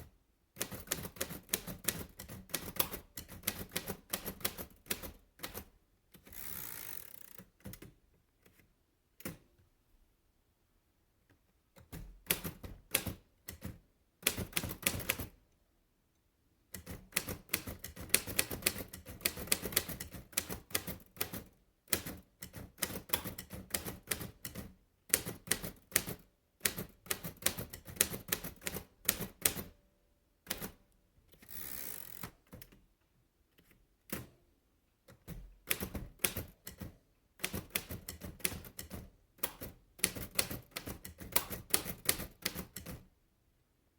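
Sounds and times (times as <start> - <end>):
typewriter key strikes: 11.8 - 15.3, 16.8 - 29.7, 35.2 - 43.0.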